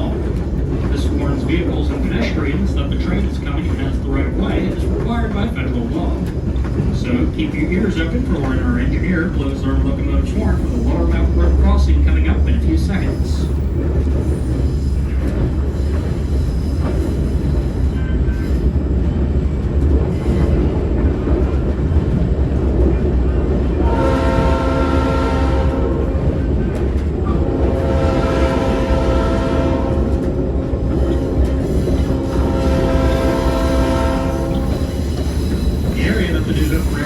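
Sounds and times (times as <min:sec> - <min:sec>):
train coach rumble and rail noise: 0:00.0 - 0:37.0
locomotive horn blasts: 0:23.8 - 0:26.2, 0:27.4 - 0:30.5, 0:31.3 - 0:34.8.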